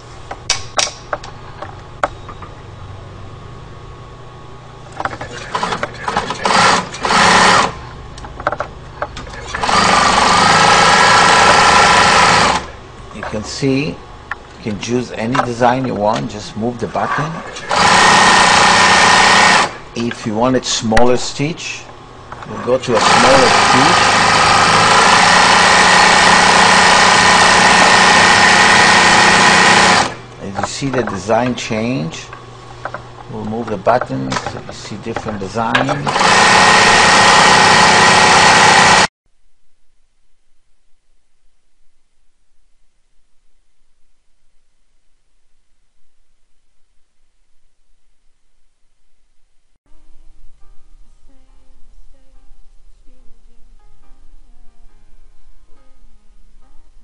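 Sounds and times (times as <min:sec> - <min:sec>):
steady low hum: 0:00.0 - 0:37.4, 0:39.3 - 0:57.0
sewing machine stitching: 0:05.2 - 0:07.8, 0:09.4 - 0:12.8, 0:17.1 - 0:19.8, 0:22.5 - 0:30.2, 0:35.6 - 0:39.1.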